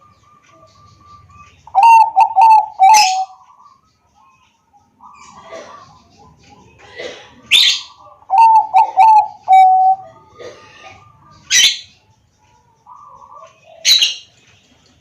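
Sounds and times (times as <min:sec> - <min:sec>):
dove cooing: 0:00.0 - 0:03.8, 0:05.0 - 0:06.2, 0:06.8 - 0:11.8, 0:12.9 - 0:14.2.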